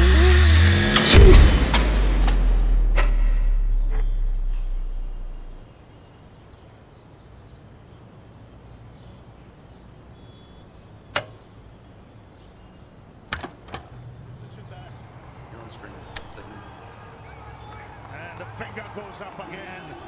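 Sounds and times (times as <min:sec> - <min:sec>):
deep rumble: 0:00.0 - 0:05.6
high-pitched ringing tone: 0:02.1 - 0:08.3
sharp click: 0:11.2 - 0:11.5, 0:13.3 - 0:14.0.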